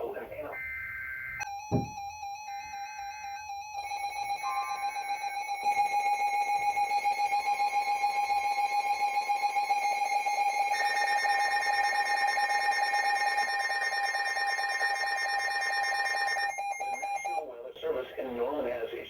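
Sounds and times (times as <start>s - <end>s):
rapid pulsing alarm: 0.5s - 17.4s
shrill steady beep: 0.5s - 17.4s
warbling two-tone data bursts: 4.0s - 6.0s.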